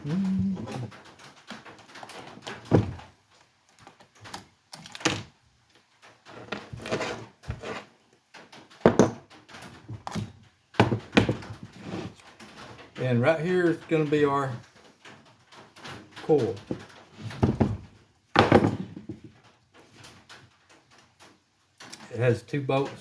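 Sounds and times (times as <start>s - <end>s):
tools knocking and scraping: 6.3s - 7.9s, 8.9s - 9.3s, 9.9s - 12.2s
loud knocks: 18.4s - 19.2s.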